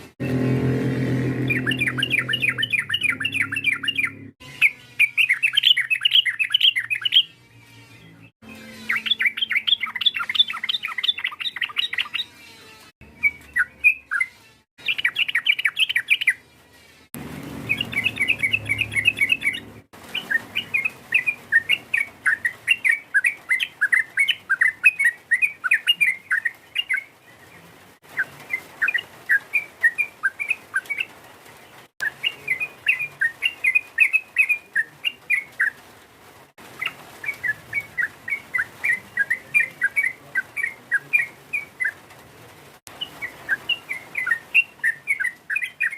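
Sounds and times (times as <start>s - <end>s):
bird chattering calls: 1.4s - 4.3s.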